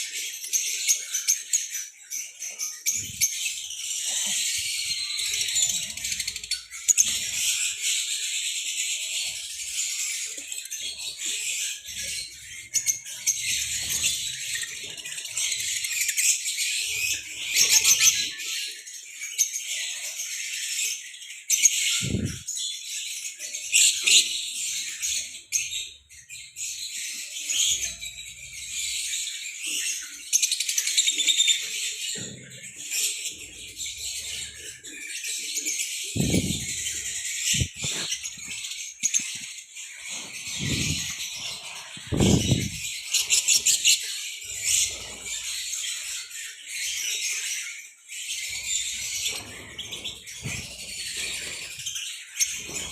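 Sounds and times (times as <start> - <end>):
lovebirds chirping: 21.7 - 22.5, 30.3 - 47.1.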